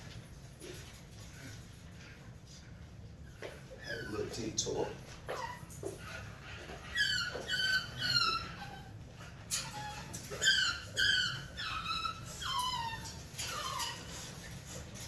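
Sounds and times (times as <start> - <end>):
puppy whimpering: 3.3 - 4.7, 5.3 - 14.7.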